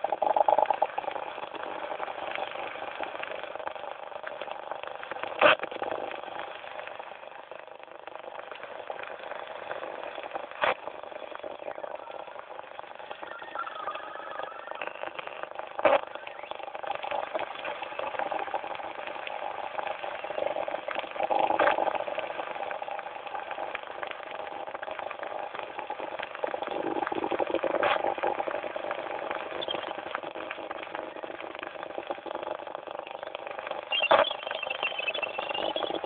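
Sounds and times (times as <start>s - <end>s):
radio buzzing tones: 0.0s - 36.0s
radio static crackle: 0.0s - 36.0s.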